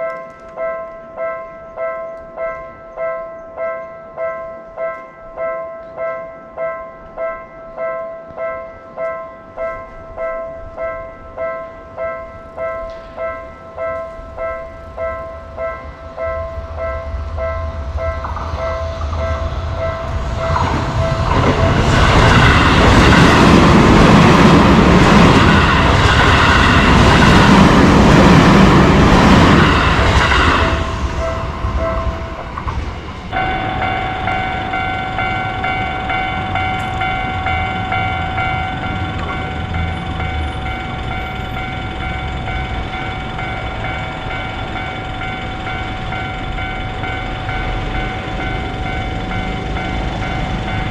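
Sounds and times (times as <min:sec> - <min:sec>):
level crossing warning bell: 0:00.0 - 0:50.9
electric train passing: 0:06.3 - 0:50.9.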